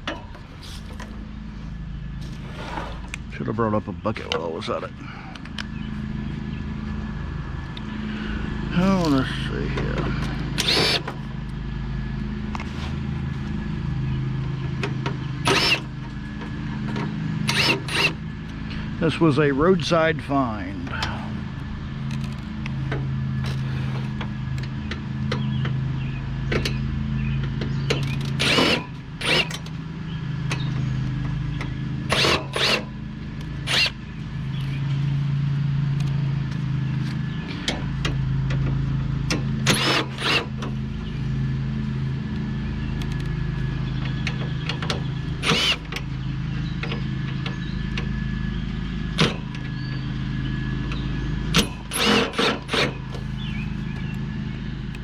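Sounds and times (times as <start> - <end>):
low mechanical hum: 0.0 - 55.0.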